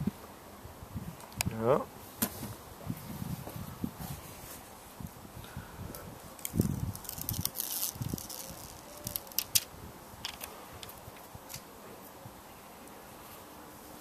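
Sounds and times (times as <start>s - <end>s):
rustling scrapes: 2.3s - 4.7s.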